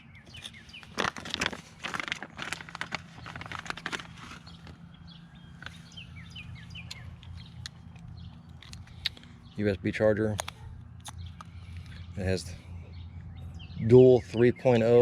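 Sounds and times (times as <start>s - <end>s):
packaging clicks and rattles: 0.3s - 4.8s.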